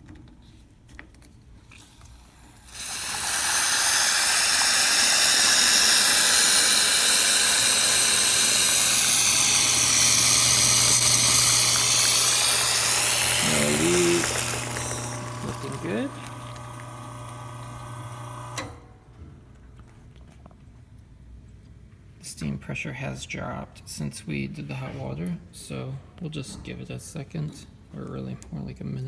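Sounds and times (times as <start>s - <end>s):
steam wand hissing: 2.2s - 18.7s
pump hum: 2.5s - 18.8s.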